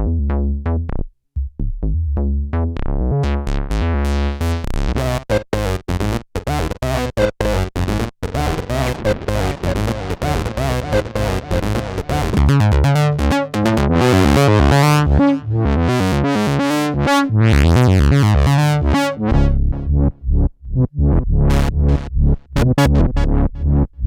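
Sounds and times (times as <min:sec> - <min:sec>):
synthesizer rhythmic sequence: 0:08.3 - 0:20.2, 0:21.1 - 0:23.5.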